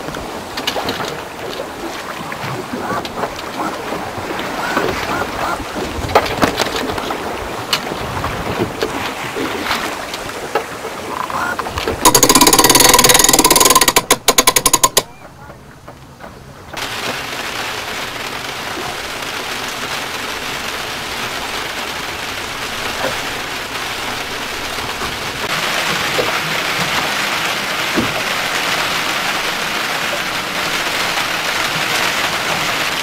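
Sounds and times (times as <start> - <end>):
boat knocks and creaks: 0.0 - 33.0
water wash: 0.0 - 33.0
fast rattle slowing into clicks: 12.0 - 15.1.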